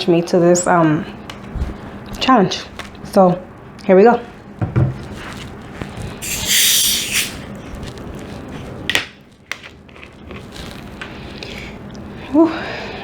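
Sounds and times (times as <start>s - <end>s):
carbonation hissing from bottle: 6.2s - 7.5s.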